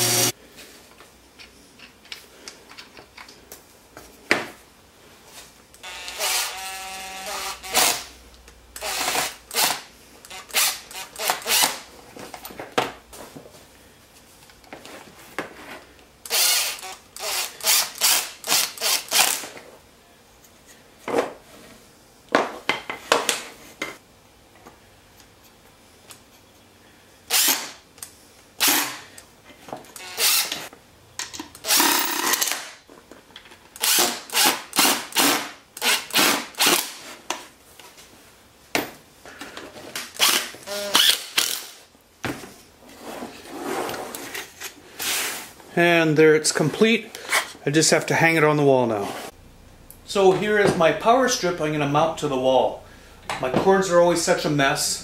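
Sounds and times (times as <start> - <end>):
power drill running in bursts: 0.0 - 0.3, 5.8 - 8.0, 16.3 - 19.4, 30.0 - 30.6.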